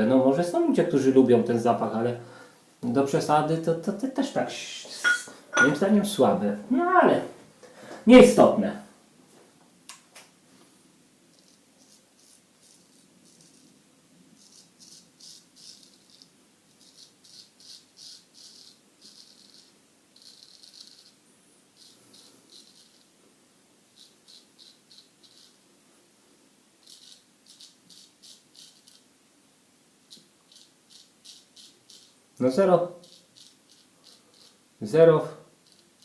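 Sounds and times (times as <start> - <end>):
straight razor scraping whiskers: 21.8 - 23.1, 24.0 - 25.6, 26.8 - 29.1, 30.1 - 32.2, 33.0 - 34.6.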